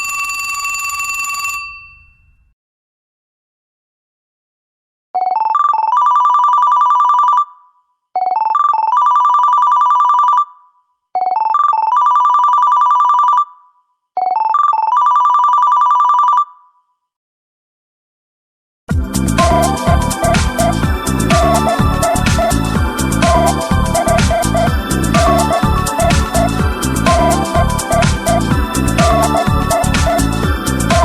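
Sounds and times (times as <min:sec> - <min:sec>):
electronic ringtone beeps and trill: 0:05.2 - 0:07.6, 0:08.2 - 0:10.6, 0:11.2 - 0:16.6, 0:19.0 - 0:31.0.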